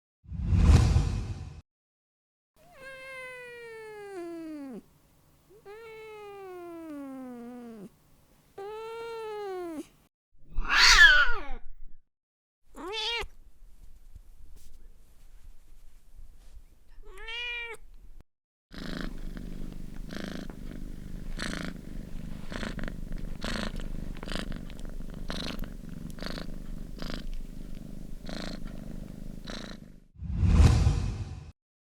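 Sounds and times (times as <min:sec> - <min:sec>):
cat meowing: 0:02.6 - 0:04.8, 0:05.5 - 0:07.8, 0:08.6 - 0:09.9, 0:10.6 - 0:11.6, 0:12.7 - 0:13.4, 0:17.0 - 0:17.8
cat purring: 0:02.7 - 0:08.0, 0:18.7 - 0:30.2.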